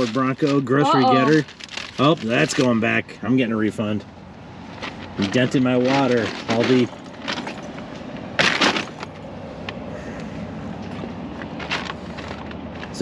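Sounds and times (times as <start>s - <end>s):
plastic packaging rustling: 0.0s - 3.0s, 4.6s - 9.3s, 11.2s - 13.0s.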